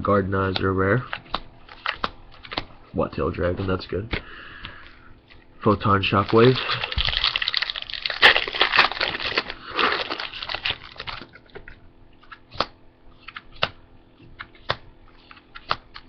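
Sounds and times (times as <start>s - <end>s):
cards rustling and crinkling: 0.5s - 4.1s, 5.3s - 13.8s
cards flicked clicking: 12.3s - 13.8s, 14.4s - 16.0s.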